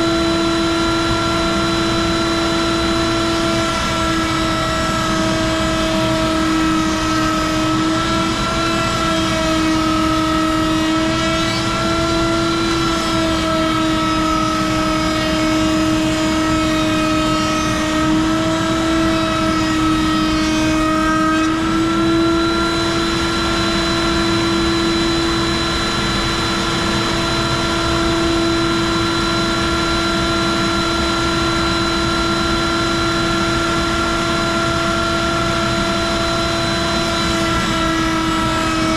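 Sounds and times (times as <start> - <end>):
router high whine: 0.0 - 38.9.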